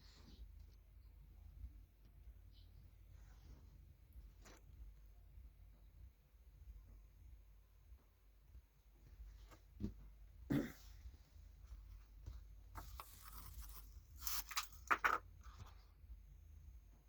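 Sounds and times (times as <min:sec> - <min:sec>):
soft rustles and taps: 0:07.9 - 0:16.2.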